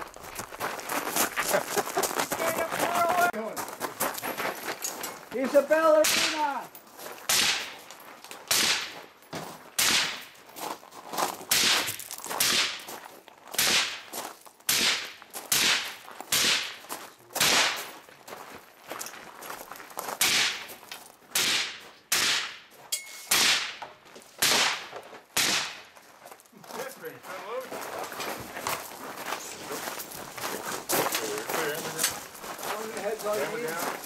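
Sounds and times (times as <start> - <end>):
rifle shots with echo: 17.4 - 17.8, 24.4 - 25.8.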